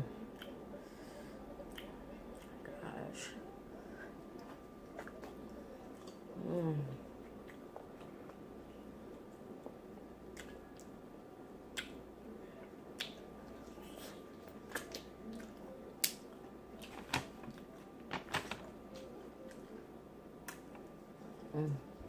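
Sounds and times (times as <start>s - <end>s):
person chewing with lip smacks: 1.7s - 2.5s, 9.6s - 10.9s, 13.0s - 16.2s.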